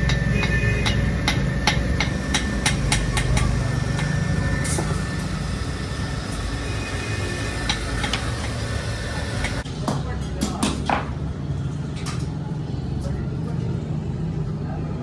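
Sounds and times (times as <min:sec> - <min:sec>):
hammer strikes on metal: 0:00.0 - 0:05.0, 0:07.6 - 0:08.6
workshop machinery drone: 0:00.0 - 0:15.0.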